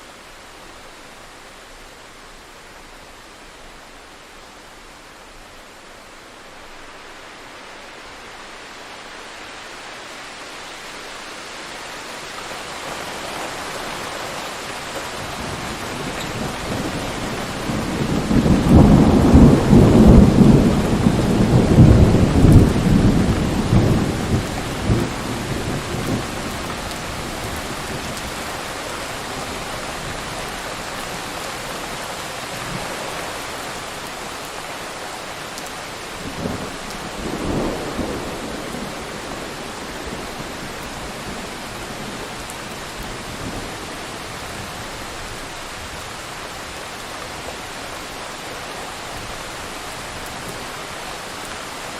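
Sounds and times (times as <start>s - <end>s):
steady rain: 0.0s - 51.9s
loud rumble of thunder: 15.2s - 28.3s, 36.2s - 42.3s.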